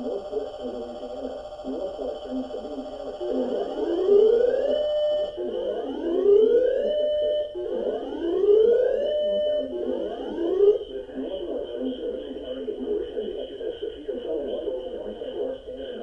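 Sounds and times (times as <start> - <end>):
faint steady high tone: 0.0 - 10.8
siren wailing: 0.0 - 10.8.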